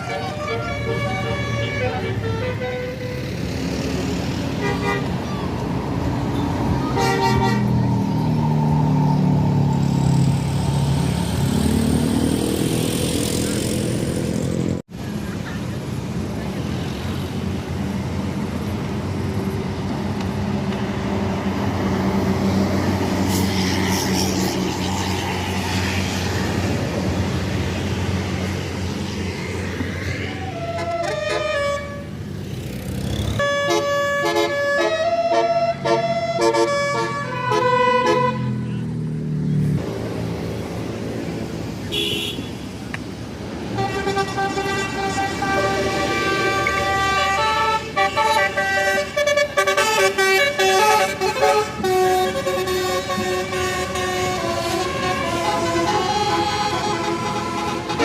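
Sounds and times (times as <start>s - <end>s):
multi-tone bus horn tune: 0.0s - 5.2s, 6.8s - 8.0s, 30.3s - 32.3s, 33.2s - 38.7s, 41.9s - 42.6s, 43.7s - 58.0s
bus engines and traffic rumble: 0.0s - 58.0s.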